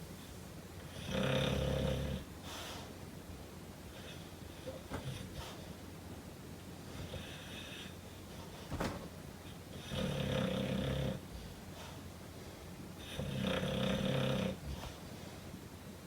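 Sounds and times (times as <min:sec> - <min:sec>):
dog snoring: 0:00.9 - 0:02.3, 0:07.0 - 0:08.0, 0:09.7 - 0:11.4, 0:13.0 - 0:15.0.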